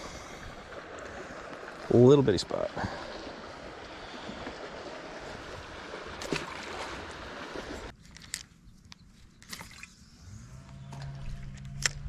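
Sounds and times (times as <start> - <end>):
water and wind rushing: 0.0 - 8.4.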